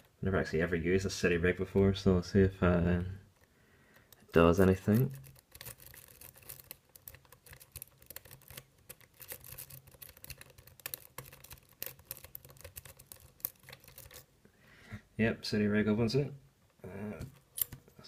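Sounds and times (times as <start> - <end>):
lock pick clicking and scraping: 4.9 - 14.3, 17.4 - 17.8.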